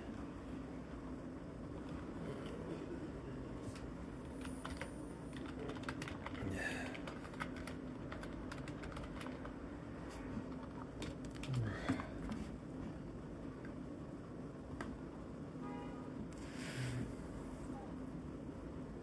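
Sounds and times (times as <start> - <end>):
person sniffing: 16.4 - 17.2.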